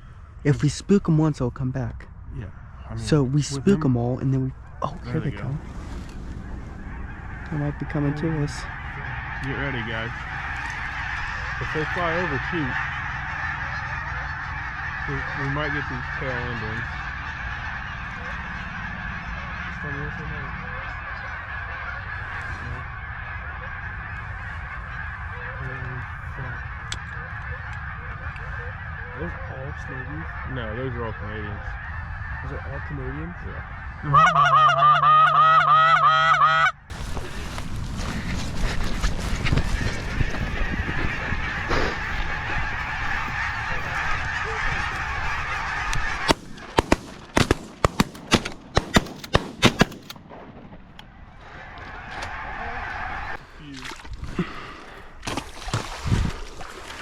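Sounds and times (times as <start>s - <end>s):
steady low rumble: 0.0s - 34.1s, 36.8s - 54.3s
geese honking: 2.5s - 57.0s
sharp clicks: 46.3s - 50.2s.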